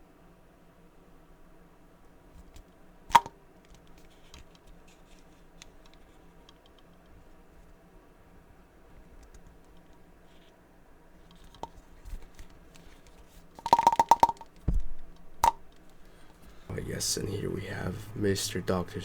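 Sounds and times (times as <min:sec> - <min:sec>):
sharp clicks and knocks: 0:13.6 - 0:16.0.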